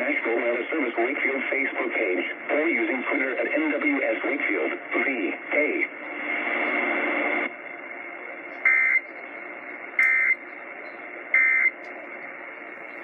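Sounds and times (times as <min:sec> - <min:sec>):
radio hiss: 0:00.0 - 0:13.0
digital data tone bursts: 0:10.0 - 0:10.4.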